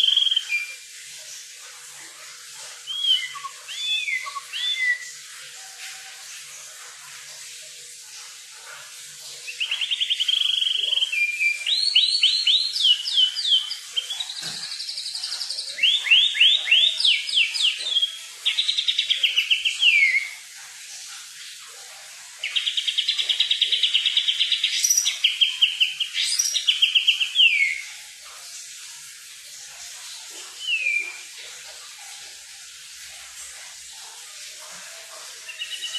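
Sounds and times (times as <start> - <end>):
songbird trilling and whistling: 0.0 - 0.8, 2.8 - 5.2, 9.5 - 20.4, 22.4 - 27.9, 30.6 - 31.2, 35.5 - 35.9.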